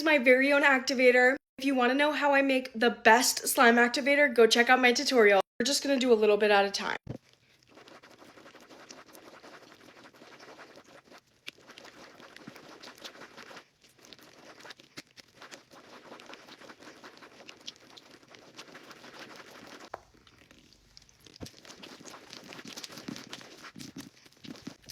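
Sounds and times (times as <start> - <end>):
sticky slime crackle: 10.7 - 24.9.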